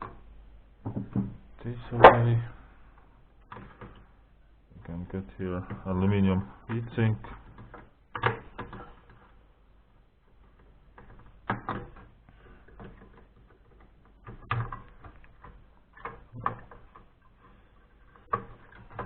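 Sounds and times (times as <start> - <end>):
computer parts knocking and clunking: 0.0 - 2.6, 3.4 - 4.1, 5.1 - 9.4, 10.3 - 19.0.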